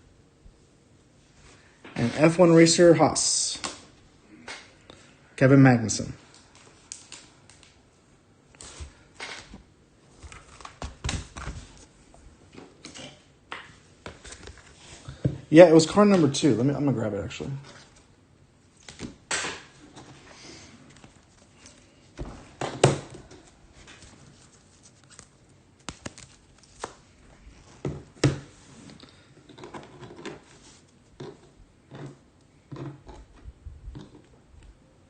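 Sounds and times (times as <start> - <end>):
trading cards handled on table: 22.9 - 28.5.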